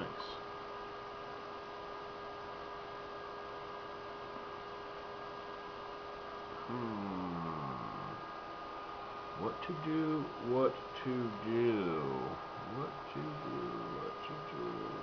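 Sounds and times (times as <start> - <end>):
computer fans and drives humming: 0.0 - 15.0
constant mid-pitched tone: 6.7 - 15.0.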